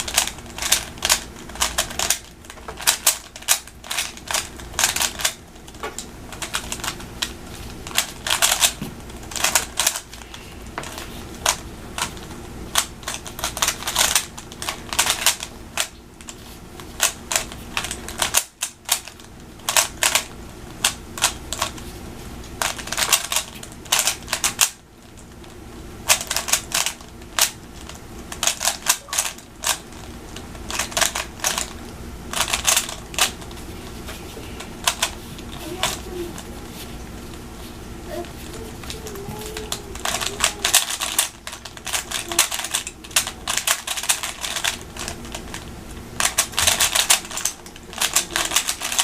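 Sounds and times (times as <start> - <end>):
speed cube clicking: 0.0 - 5.4, 6.0 - 8.8, 9.4 - 10.2, 10.8 - 16.4, 22.6 - 24.8, 26.1 - 29.8, 32.3 - 33.4, 38.9 - 45.6, 46.2 - 49.0.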